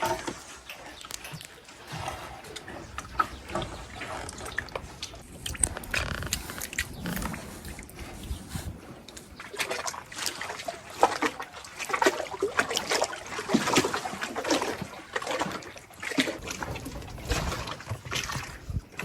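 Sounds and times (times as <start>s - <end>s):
paddle splashing in water: 0.0s - 19.0s
water dripping from paddle: 9.0s - 19.0s.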